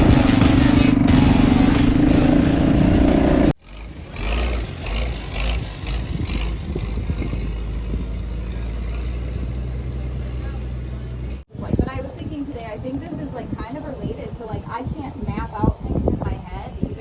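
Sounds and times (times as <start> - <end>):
dirt bike engine running: 0.0 - 11.4
wind rumble: 0.0 - 17.0.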